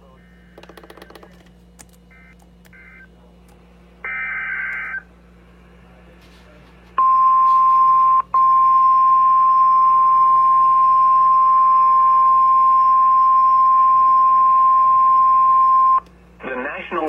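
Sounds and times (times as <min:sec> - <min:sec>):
loud steady alarm tone: 0:04.0 - 0:05.1.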